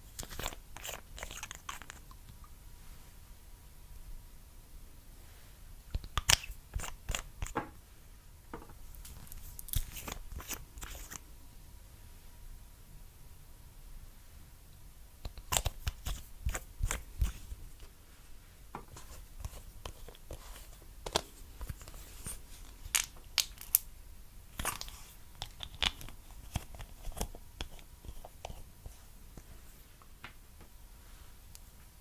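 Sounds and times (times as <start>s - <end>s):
slime popping and crackling: 22.8s - 23.9s.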